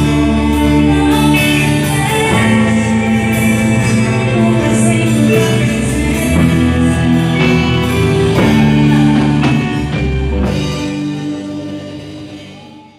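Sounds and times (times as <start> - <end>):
band playing: 0.0 - 12.9.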